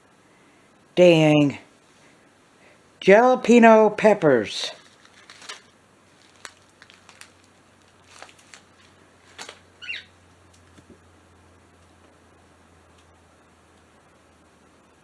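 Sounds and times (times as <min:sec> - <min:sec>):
packaging clicks and taps: 0:04.8 - 0:09.6
pet bird chirp: 0:09.8 - 0:10.2.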